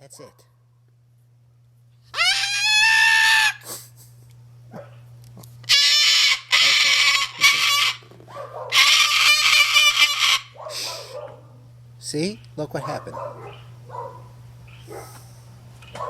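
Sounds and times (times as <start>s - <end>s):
cockatoo screaming: 2.1s - 3.7s, 5.6s - 11.2s.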